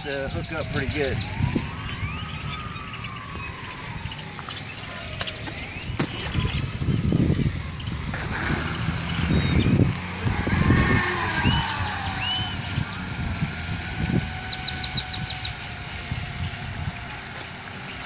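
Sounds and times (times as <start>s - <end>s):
low rumbling: 0.0s - 18.0s
toy boat motor whining: 8.1s - 18.0s.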